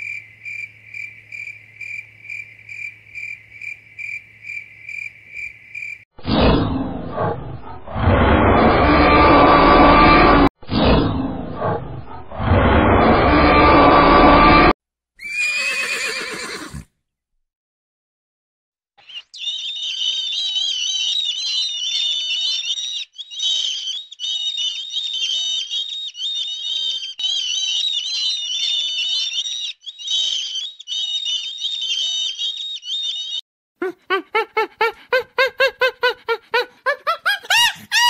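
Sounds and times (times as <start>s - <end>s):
small birds twittering: 19.0s - 33.4s
animal making rapid loud calls: 33.8s - 38.0s.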